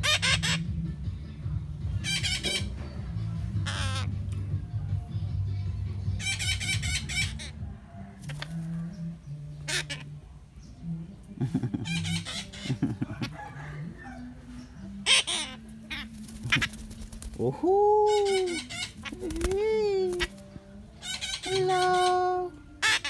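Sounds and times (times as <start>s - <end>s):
parrot squawking: 0.0s - 0.7s, 2.0s - 2.8s, 3.6s - 4.2s, 6.2s - 7.6s, 9.6s - 10.1s, 11.8s - 14.1s, 15.0s - 16.8s, 18.0s - 19.6s, 21.0s - 22.2s, 22.8s - 23.0s.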